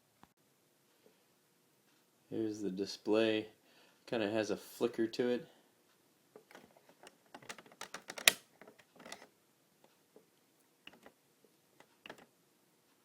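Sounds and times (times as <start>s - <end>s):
plastic dial and button clicks: 6.4s - 9.3s, 11.8s - 12.3s.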